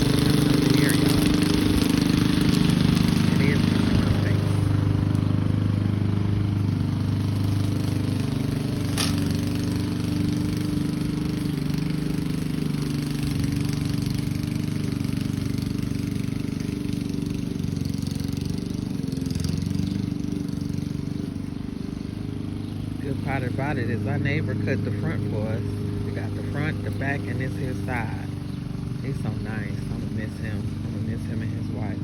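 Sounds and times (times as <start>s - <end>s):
lawn mower engine running: 0.0s - 32.0s.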